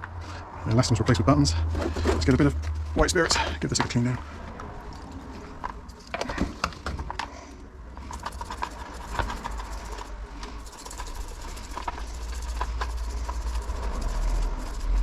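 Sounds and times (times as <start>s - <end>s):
small metal parts clicking and scraping: 4.8s - 15.0s.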